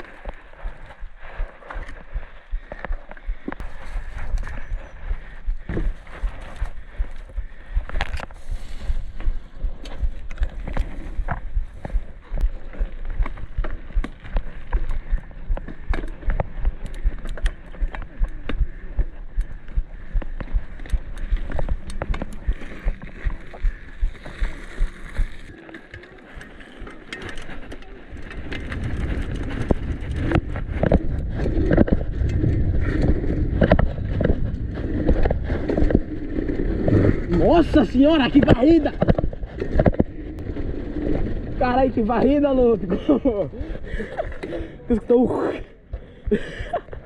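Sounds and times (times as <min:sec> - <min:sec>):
bike tyre noise on pavement: 0:00.0 - 0:44.5
wind rumble on microphone: 0:27.6 - 0:44.4.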